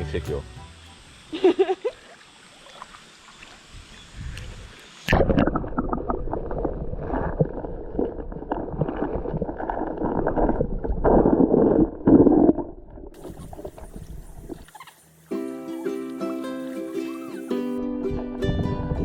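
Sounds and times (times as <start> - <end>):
muffled stream water sloshing: 1.2 - 4.2, 17.8 - 19.0.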